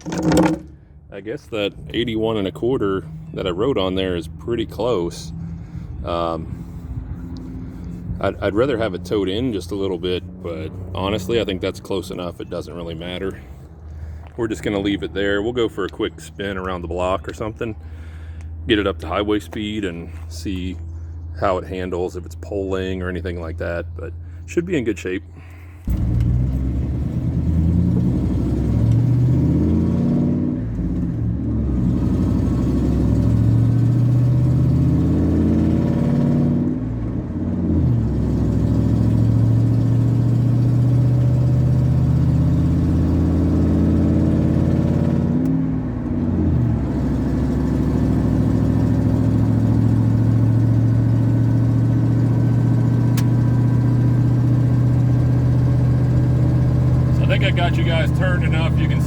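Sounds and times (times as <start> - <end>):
car engine accelerating through gears: 25.9 - 59.0.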